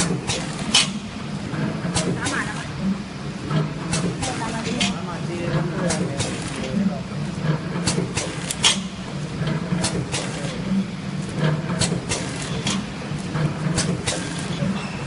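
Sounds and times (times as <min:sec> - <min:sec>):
packing machine humming: 0:00.0 - 0:15.0
sharp mechanical clicks: 0:09.7 - 0:14.8.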